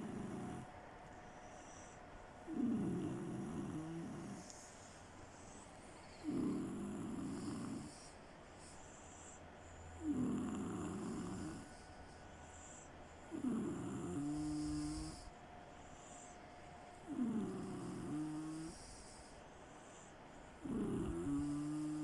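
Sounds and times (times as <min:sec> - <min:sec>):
rasping snores: 0:00.0 - 0:00.6, 0:02.5 - 0:04.6, 0:06.1 - 0:08.2, 0:10.0 - 0:11.8, 0:13.3 - 0:15.3, 0:17.0 - 0:19.2, 0:20.6 - 0:22.0
quiet breathing: 0:00.0 - 0:22.0.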